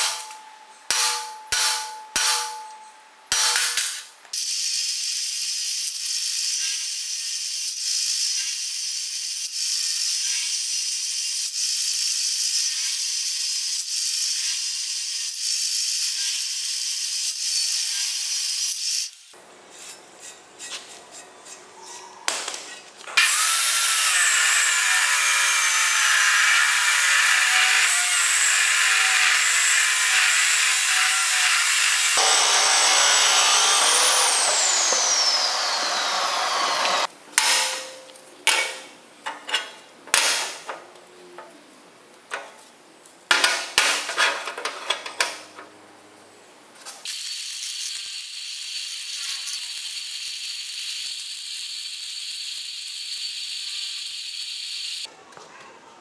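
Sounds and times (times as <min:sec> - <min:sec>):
power tool grinding metal: 0:23.2 - 0:37.9.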